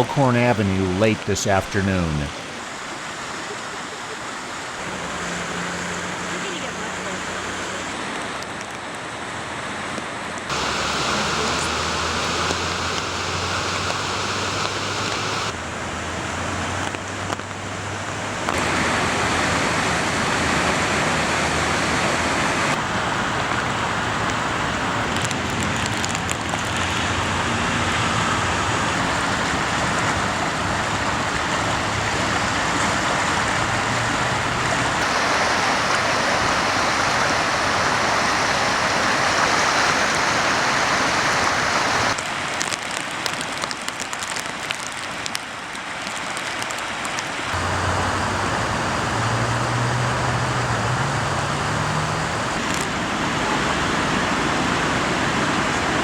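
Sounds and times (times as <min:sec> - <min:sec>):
rushing floodwater: 0:00.0 - 0:56.0.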